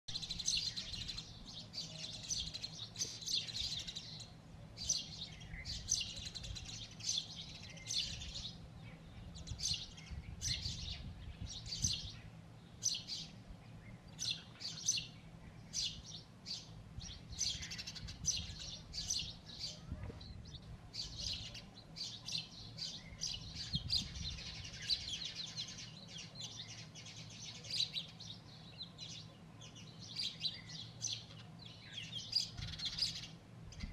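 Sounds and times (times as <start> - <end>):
sparrows chirping: 0.1 - 33.9.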